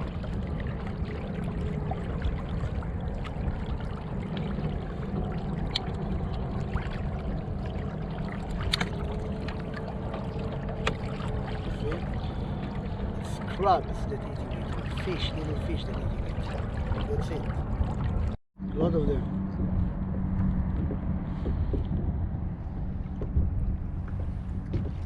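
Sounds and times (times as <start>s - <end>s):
water lapping against plastic hull: 0.0s - 18.4s, 20.1s - 25.0s
low rumble: 0.0s - 25.0s.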